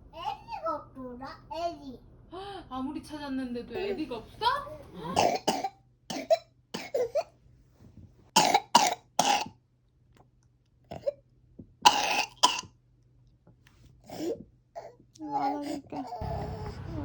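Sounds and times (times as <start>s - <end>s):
toddler coughing: 5.1s - 7.3s, 8.4s - 9.6s, 11.8s - 12.7s.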